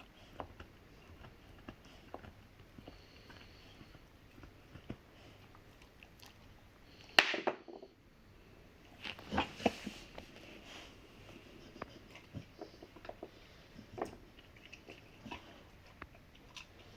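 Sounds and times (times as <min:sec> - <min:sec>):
dog gnawing on hard chew: 0:00.0 - 0:06.6, 0:11.4 - 0:16.9.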